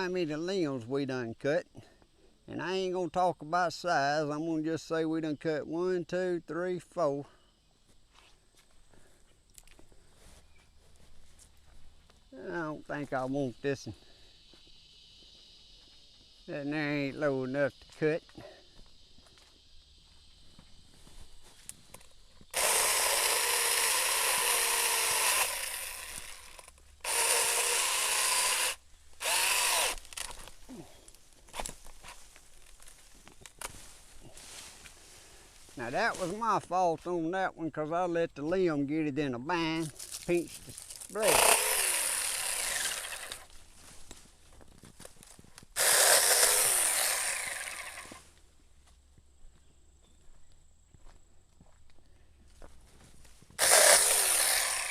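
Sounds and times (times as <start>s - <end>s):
mini chainsaw cutting tree limb: 21.9s - 33.8s, 40.0s - 43.6s, 45.6s - 48.3s, 53.6s - 54.9s.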